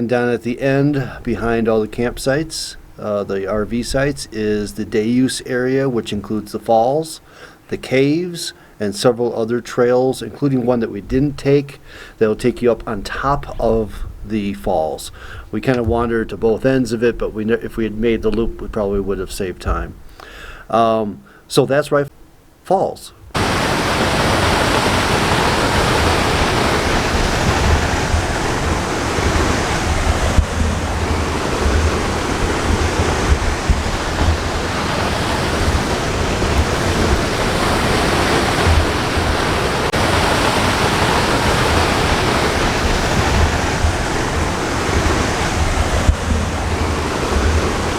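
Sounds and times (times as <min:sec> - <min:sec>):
waterfall rushing: 0:23.4 - 0:47.9.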